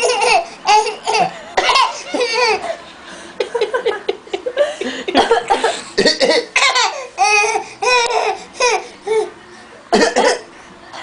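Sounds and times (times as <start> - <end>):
baby fake coughing: 0.0 - 2.6, 5.2 - 8.8, 9.9 - 10.5
people laughing: 1.1 - 6.0.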